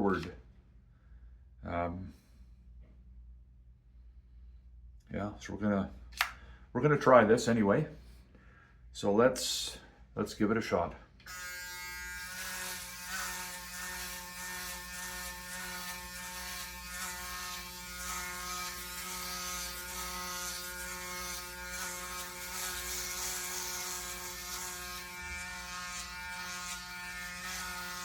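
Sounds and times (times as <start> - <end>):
electric shaver cutting stubble: 11.2 - 28.0.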